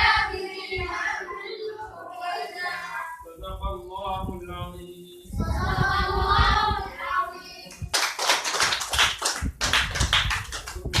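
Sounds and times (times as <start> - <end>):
hand clapping: 7.7 - 11.0.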